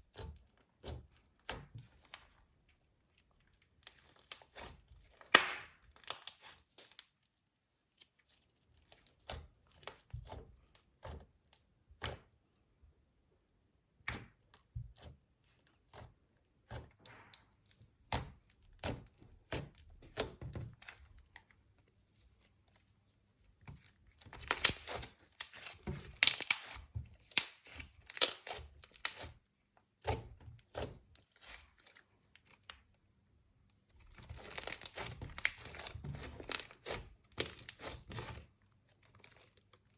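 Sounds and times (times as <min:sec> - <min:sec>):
slime crackling and popping: 0:03.8 - 0:07.1, 0:24.3 - 0:29.3, 0:34.1 - 0:38.4.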